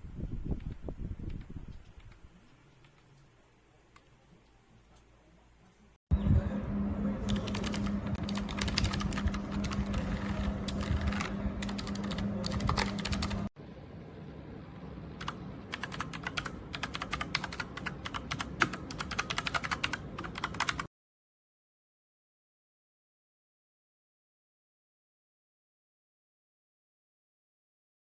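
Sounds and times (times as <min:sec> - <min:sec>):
steady low hum: 0:05.7 - 0:20.7
mechanical keyboard typing: 0:07.3 - 0:13.5, 0:15.2 - 0:20.9.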